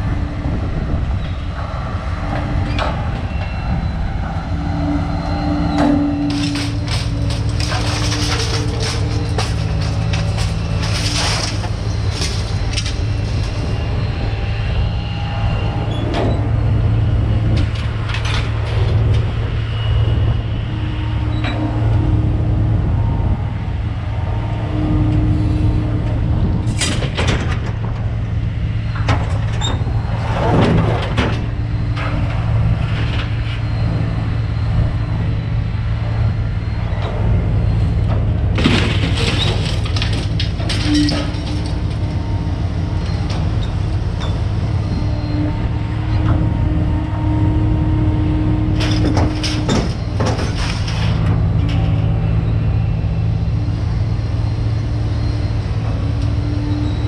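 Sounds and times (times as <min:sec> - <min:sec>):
metallic clanks and scrapes: 0:02.3 - 0:14.4, 0:17.5 - 0:20.0, 0:37.8 - 0:46.6, 0:48.7 - 0:52.3.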